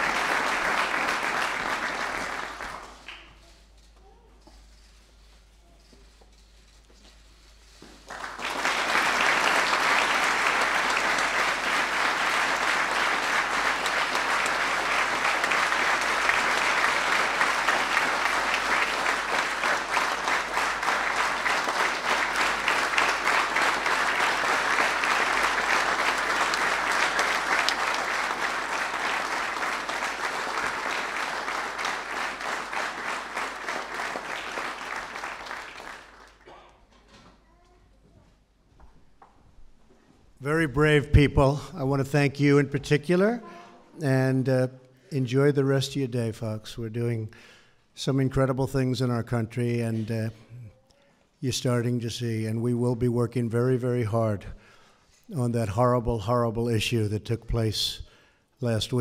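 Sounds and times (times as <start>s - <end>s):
audience applauding: 0.0s - 3.6s, 7.7s - 36.5s.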